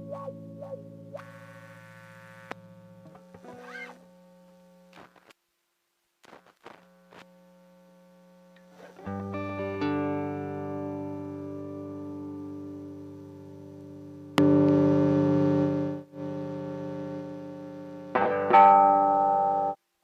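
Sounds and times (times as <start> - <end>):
distorted electric guitar: 0.0 - 4.1, 8.6 - 19.8.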